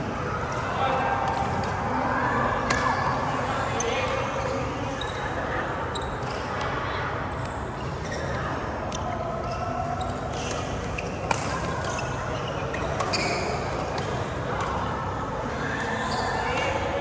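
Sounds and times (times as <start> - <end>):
steady background noise: 0.0 - 17.0
shoes squeaking on court: 9.5 - 14.1.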